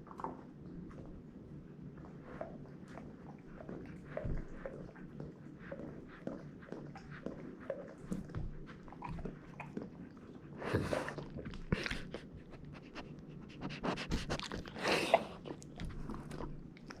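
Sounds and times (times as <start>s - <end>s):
dog panting: 3.3s - 17.0s
dog chewing crunchy food: 3.5s - 17.0s.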